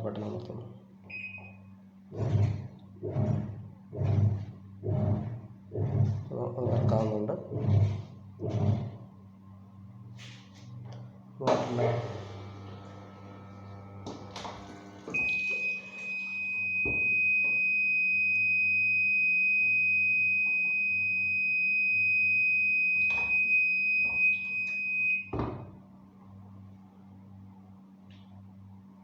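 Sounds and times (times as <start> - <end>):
low hum: 1.4 - 25.3
high-pitched beeper tone: 15.1 - 25.3.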